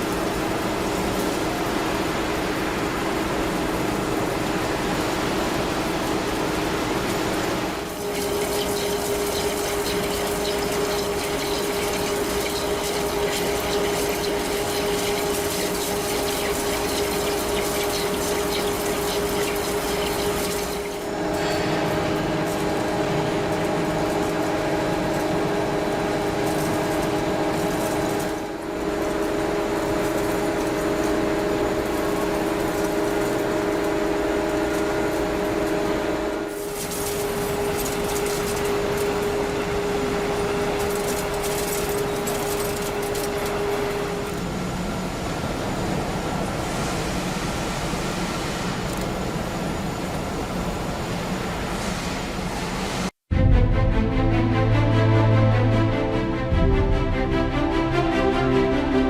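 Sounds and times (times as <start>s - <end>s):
coolant splashing: 0.0s - 44.3s
machine hum: 0.0s - 47.2s, 53.3s - 59.0s.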